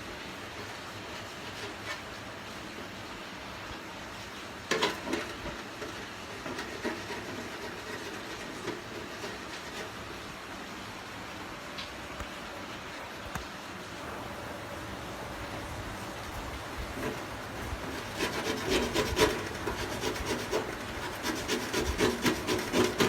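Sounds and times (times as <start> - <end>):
steady background hiss: 0.0 - 23.0
metal scraping and clicking: 4.7 - 10.0, 16.9 - 23.0.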